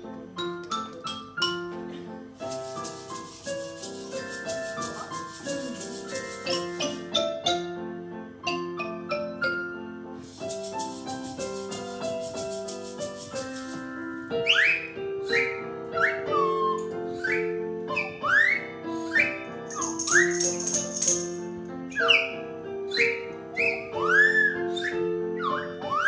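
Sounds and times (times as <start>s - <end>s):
waltz melody: 0.0s - 26.0s
shaker rattling: 2.4s - 7.2s, 10.2s - 14.2s, 19.7s - 21.6s.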